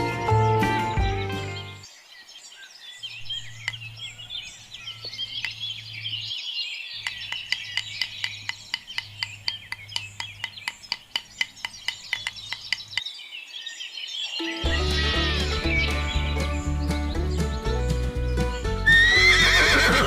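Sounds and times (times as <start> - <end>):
small birds chirping: 0.0 - 20.0
fast sharp clicks: 7.0 - 13.0.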